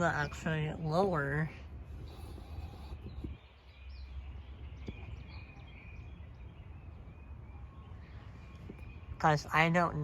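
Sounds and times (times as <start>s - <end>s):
faint bird chirps: 2.0s - 9.4s.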